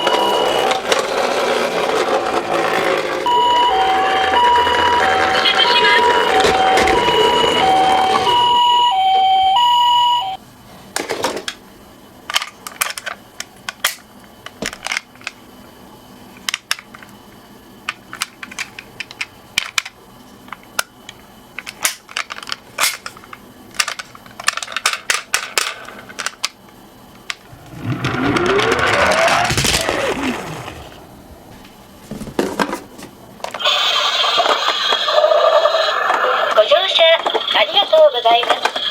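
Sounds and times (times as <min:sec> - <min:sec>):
two-tone ambulance siren: 0:00.0 - 0:00.9, 0:03.2 - 0:10.4
noisy rising pitch glide: 0:27.5 - 0:31.5
toy cars clacking on track: 0:27.6 - 0:30.8.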